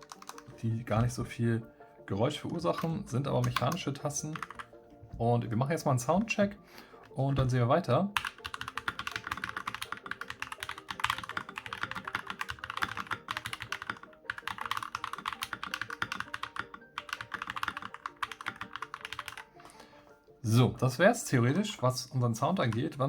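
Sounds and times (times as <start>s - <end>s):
fast mechanical keyboard typing: 0.0s - 0.4s, 2.8s - 4.6s, 8.2s - 19.4s, 22.5s - 22.9s.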